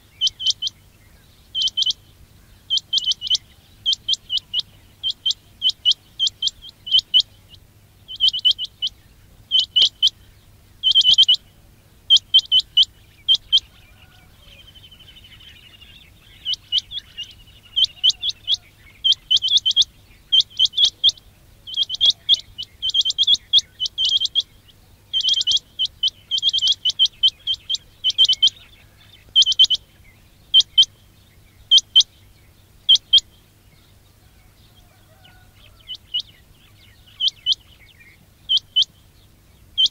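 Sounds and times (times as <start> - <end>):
quail calling: 0.0 - 0.8, 1.5 - 11.5, 12.1 - 31.0, 31.6 - 32.2, 32.8 - 33.4, 34.2 - 39.0
faint warbling bird call: 0.0 - 31.0.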